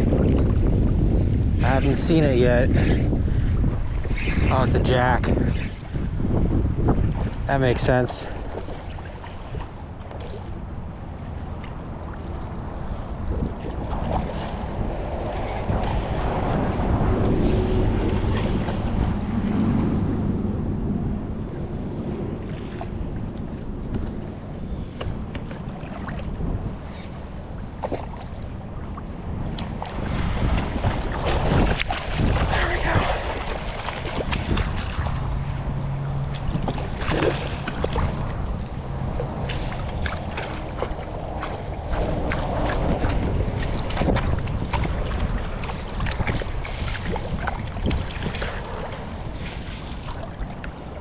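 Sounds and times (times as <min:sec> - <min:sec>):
water: 0:00.0 - 0:51.0
wind rumbling on microphone: 0:00.0 - 0:51.0
low steady hum: 0:05.9 - 0:30.6
small sharp splashes: 0:22.4 - 0:24.2.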